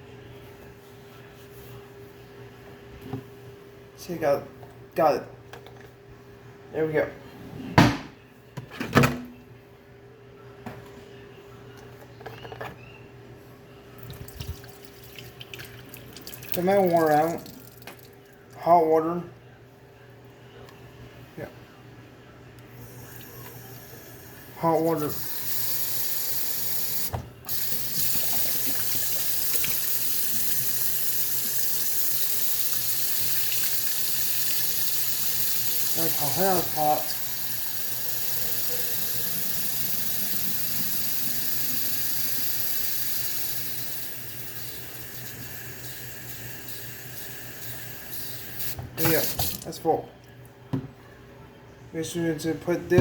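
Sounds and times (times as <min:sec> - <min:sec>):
water running from tap into tank: 0:14.0 - 0:18.2, 0:24.6 - 0:49.7.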